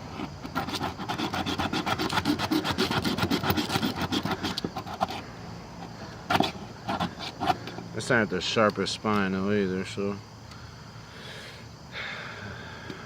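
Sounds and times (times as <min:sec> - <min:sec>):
blade rasping on ferro rod: 0:00.2 - 0:05.2, 0:06.3 - 0:07.7.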